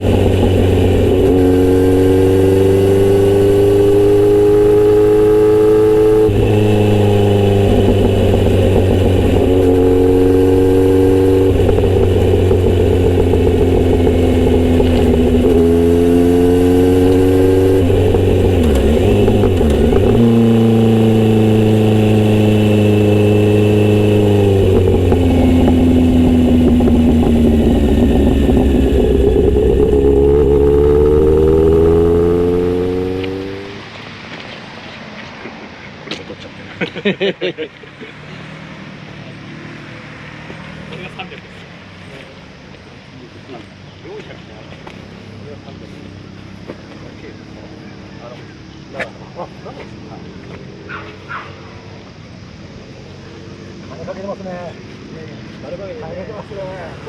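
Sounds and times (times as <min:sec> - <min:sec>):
motorcycle engine revving through gears: 0:00.0 - 0:33.9.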